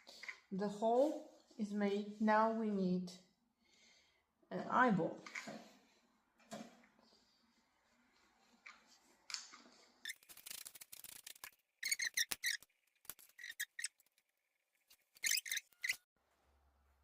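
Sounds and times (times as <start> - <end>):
short high-pitched squeaks: 10.0 - 14.1, 15.2 - 16.1.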